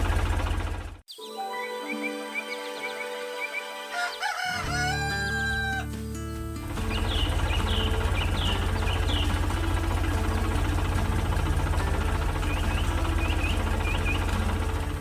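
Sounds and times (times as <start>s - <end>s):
engine throbbing: 0.0s - 1.0s, 4.8s - 15.0s
bird chirps: 1.1s - 14.8s.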